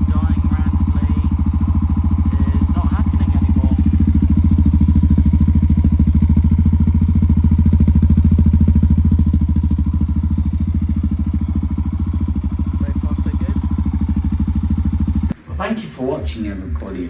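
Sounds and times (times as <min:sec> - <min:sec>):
motorcycle engine idling: 0:00.0 - 0:17.0.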